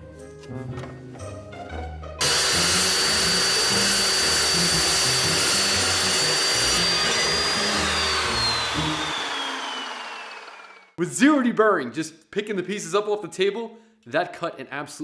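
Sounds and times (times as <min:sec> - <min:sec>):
chop saw cutting steel: 0:02.2 - 0:10.9.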